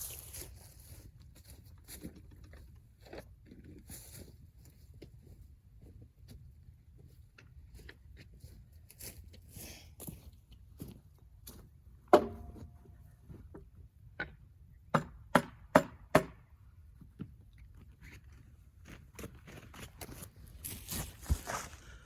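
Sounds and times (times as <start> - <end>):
scuffing and handling noise: 0.0 - 11.7, 17.7 - 22.0.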